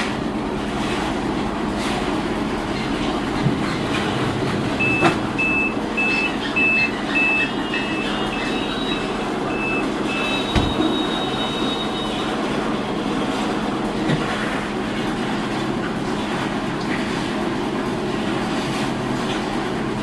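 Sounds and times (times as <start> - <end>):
electronic warning beeps: 4.8 - 12.3.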